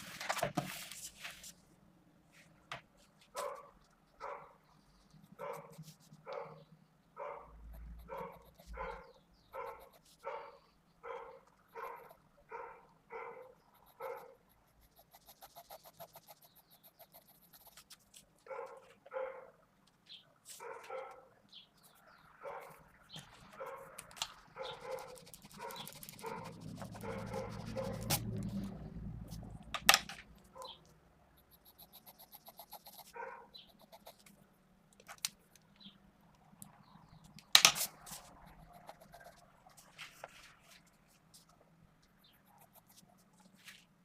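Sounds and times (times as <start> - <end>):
dog barking: 3.4 - 4.6, 5.4 - 14.5, 18.4 - 19.6, 20.5 - 21.4, 22.4 - 22.9, 23.5 - 28.3, 30.5 - 30.8, 33.1 - 33.6.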